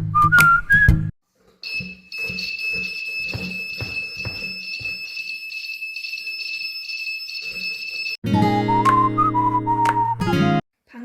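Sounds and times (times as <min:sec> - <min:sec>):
high-pitched alarm buzzer: 0:01.6 - 0:08.2
desk knocking and rattling: 0:02.3 - 0:05.0.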